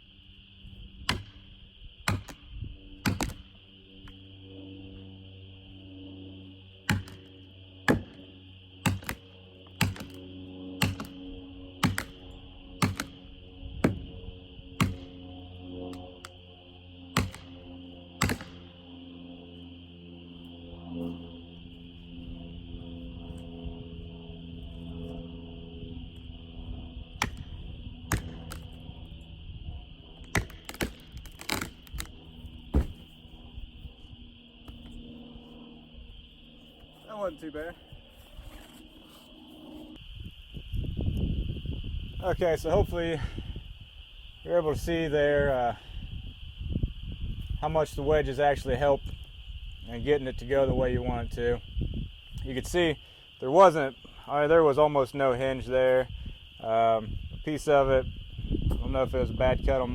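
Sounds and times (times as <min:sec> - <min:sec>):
hammer striking wedges: 0:01.1 - 0:01.3, 0:03.0 - 0:03.4, 0:06.9 - 0:07.2, 0:08.9 - 0:09.2, 0:09.8 - 0:10.2, 0:10.8 - 0:11.1, 0:11.8 - 0:12.1, 0:12.8 - 0:13.1, 0:14.8 - 0:15.1, 0:17.2 - 0:17.5, 0:18.2 - 0:18.5
knocks and cracks of tree felling: 0:01.1 - 0:01.4, 0:02.0 - 0:02.4, 0:03.0 - 0:03.4, 0:06.9 - 0:07.2, 0:08.8 - 0:09.2, 0:09.8 - 0:10.2, 0:10.8 - 0:11.1, 0:11.8 - 0:12.2, 0:12.8 - 0:13.1, 0:17.2 - 0:17.5, 0:18.2 - 0:18.6, 0:28.1 - 0:28.7, 0:30.2 - 0:32.1, 0:32.7 - 0:33.1
deep thump: 0:32.7 - 0:33.1.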